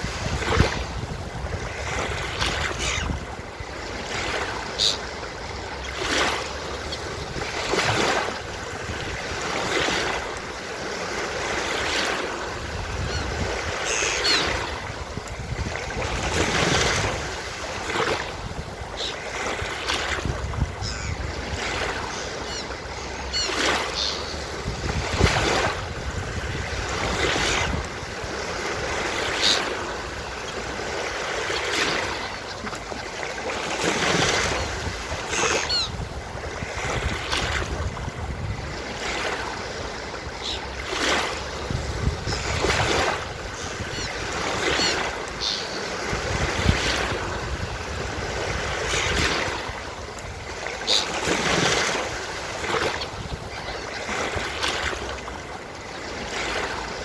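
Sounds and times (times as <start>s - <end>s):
ocean waves breaking on beach: 0.0s - 57.0s
seagull calls: 2.6s - 3.2s, 4.6s - 5.1s, 13.0s - 14.8s, 20.8s - 24.6s, 29.2s - 29.8s, 31.4s - 33.1s, 34.3s - 36.0s, 40.4s - 40.7s, 42.2s - 46.1s, 50.8s - 51.4s.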